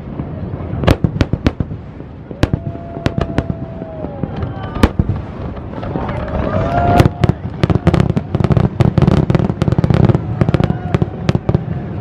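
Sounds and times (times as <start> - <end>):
fireworks bangs and crackles: 0.0 - 12.0.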